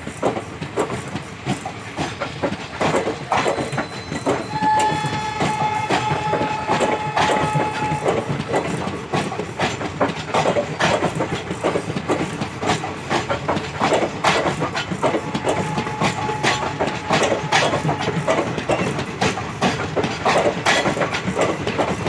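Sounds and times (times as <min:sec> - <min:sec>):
train wheels clattering over rail joints: 0:00.0 - 0:22.0.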